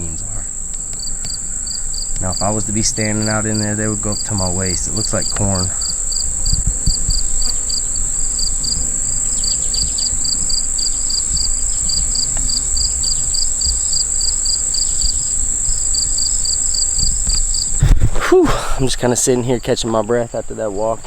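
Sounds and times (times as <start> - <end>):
low rumble on microphone: 0.0 - 19.8
insects buzzing: 0.0 - 21.0
insects chirping: 0.0 - 21.0.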